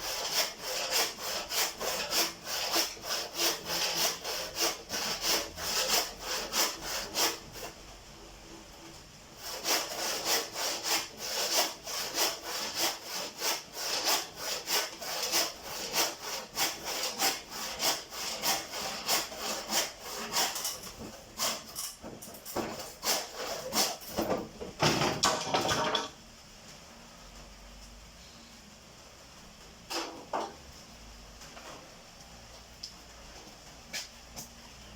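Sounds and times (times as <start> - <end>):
hand saw cutting wood: 0.0 - 7.8, 9.4 - 21.9, 22.6 - 24.1.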